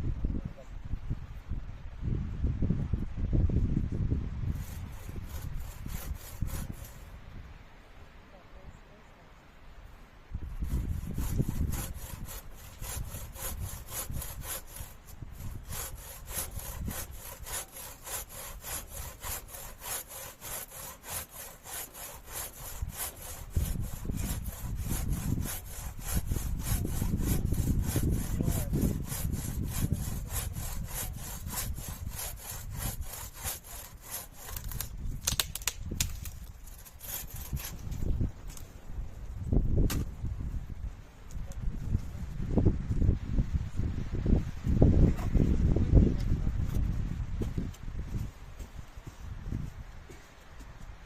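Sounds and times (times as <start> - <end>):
wind rumbling on microphone: 0.0 - 7.8, 9.8 - 21.2, 22.2 - 51.0
hand saw cutting wood: 4.5 - 7.0, 10.6 - 37.9.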